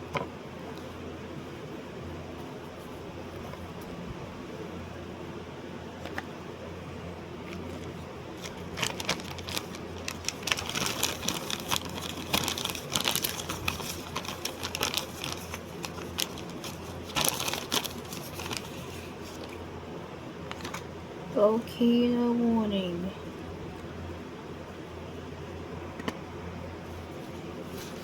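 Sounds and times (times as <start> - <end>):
steady low hum: 0.0 - 28.0
crinkling and clicking handling noises: 6.0 - 6.3, 7.4 - 19.7, 20.4 - 20.9.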